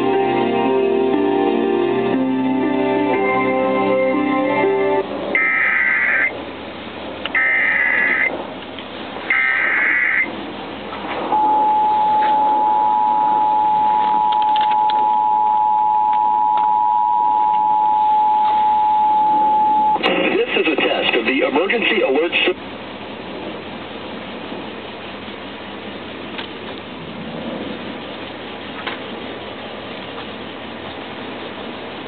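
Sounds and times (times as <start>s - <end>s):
two-tone attention signal: 5.4s - 6.3s, 7.4s - 8.3s, 9.3s - 10.3s, 11.3s - 20.0s
warbling digital data screech: 5.4s - 6.3s, 7.3s - 8.3s, 9.3s - 10.3s.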